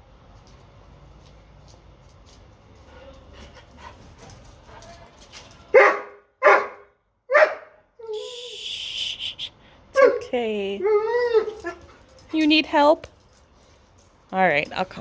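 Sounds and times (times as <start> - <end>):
dog barking: 5.7 - 7.8, 10.0 - 10.3.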